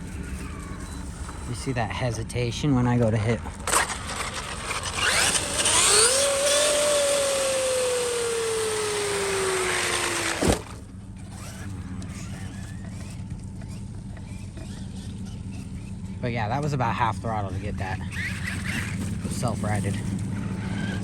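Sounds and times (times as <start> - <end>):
toy truck electric motor whining: 3.4 - 16.2, 17.8 - 21.0.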